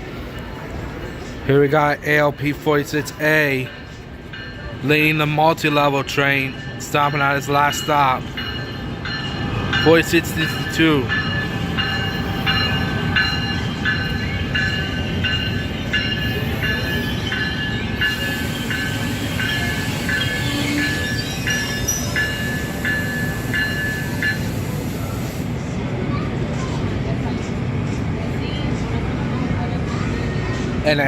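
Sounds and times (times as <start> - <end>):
train low rumble: 0.0 - 31.0
train bell dinging: 0.9 - 25.5.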